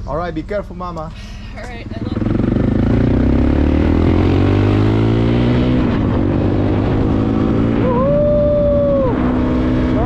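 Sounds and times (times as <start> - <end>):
motorcycle engine pulling away: 1.8 - 10.0.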